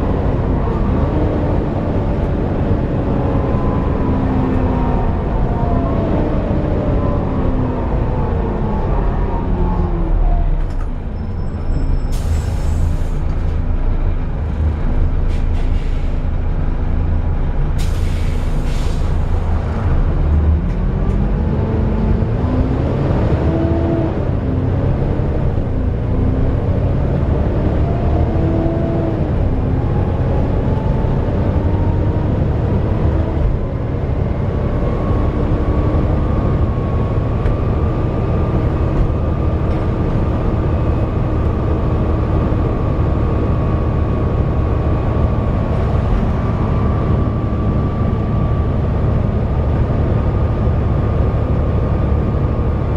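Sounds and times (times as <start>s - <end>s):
diesel bus engine running: 0.0s - 52.9s
air brake hisses: 12.0s - 13.3s, 15.3s - 16.2s, 17.8s - 19.4s.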